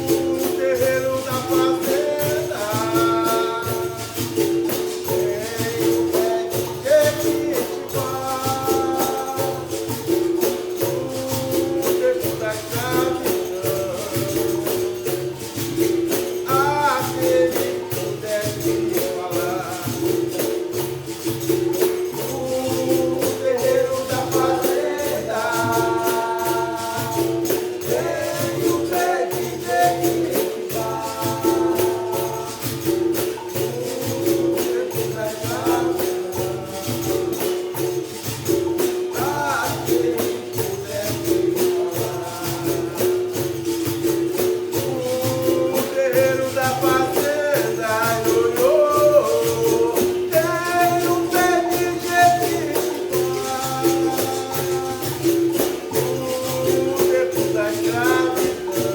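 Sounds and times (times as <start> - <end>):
person singing: 0.0 - 15.2, 16.1 - 20.5, 21.7 - 38.2, 39.0 - 58.9
berimbau: 0.0 - 58.9
pandeiro: 0.0 - 58.9
shakers: 0.0 - 58.9.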